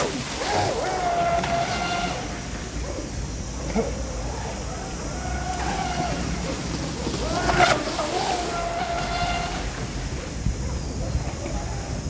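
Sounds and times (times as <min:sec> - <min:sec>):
model boat motor whine: 0:00.0 - 0:10.6.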